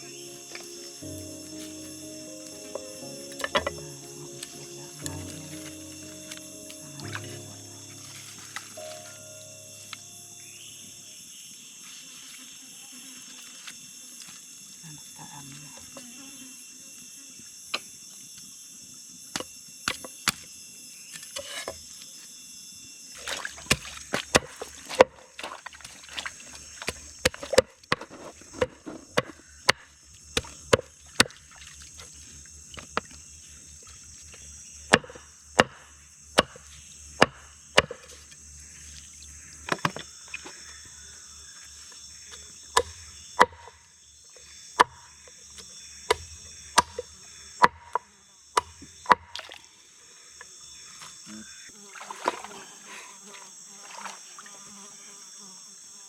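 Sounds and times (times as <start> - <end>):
jungle insects droning: 0.0 - 56.0
sharp knocks and chops: 23.4 - 25.6, 34.9 - 36.6, 37.2 - 38.1, 46.1 - 48.0.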